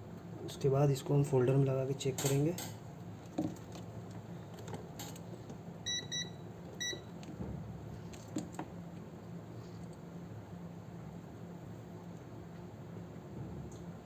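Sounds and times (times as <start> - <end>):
low steady hum: 0.0 - 14.0
short electronic beeps: 5.9 - 7.0.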